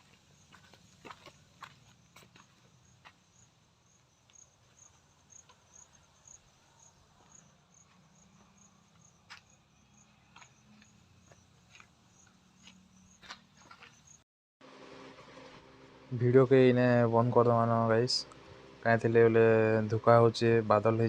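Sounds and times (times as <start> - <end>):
cricket chirping: 0.0 - 14.2.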